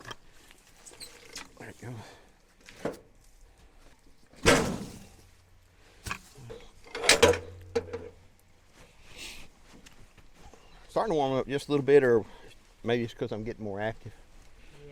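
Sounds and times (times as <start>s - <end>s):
heavy wooden thuds and knocks: 4.4s - 5.3s.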